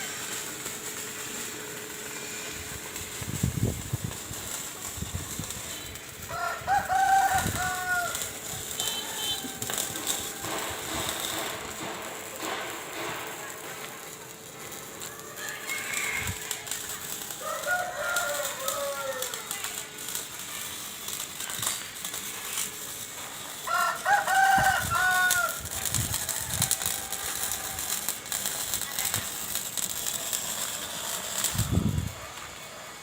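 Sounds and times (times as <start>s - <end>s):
rooster crowing: 6.3s - 10.7s, 17.4s - 19.6s, 23.7s - 28.1s.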